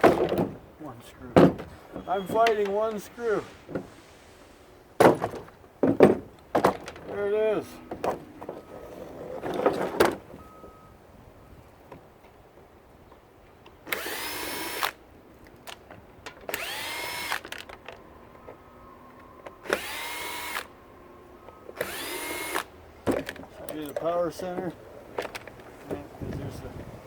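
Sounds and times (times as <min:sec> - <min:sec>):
plastic parts knocking and rattling: 0:05.0 - 0:07.2, 0:23.0 - 0:26.0
power drill whining: 0:13.9 - 0:15.0, 0:16.5 - 0:17.6, 0:19.6 - 0:20.8, 0:21.7 - 0:22.7.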